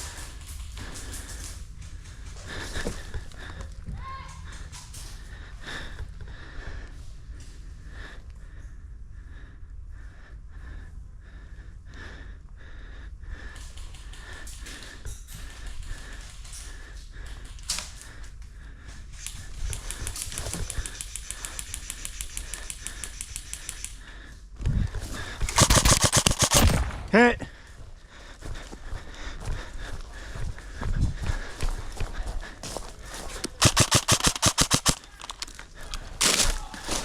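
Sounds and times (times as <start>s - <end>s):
airsoft gun firing full auto: 25.5s - 27.1s, 33.6s - 35.4s.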